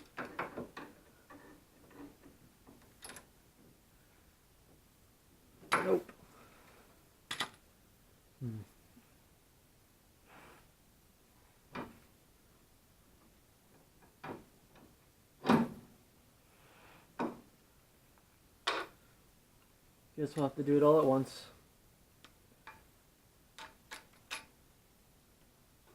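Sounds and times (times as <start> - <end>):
metal parts knocking and clunking: 0.0 - 3.3.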